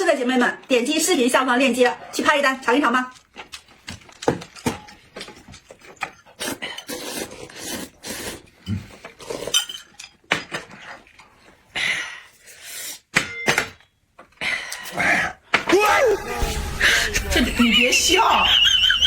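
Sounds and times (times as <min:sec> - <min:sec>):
dishes and utensils clinking: 0:08.7 - 0:11.0.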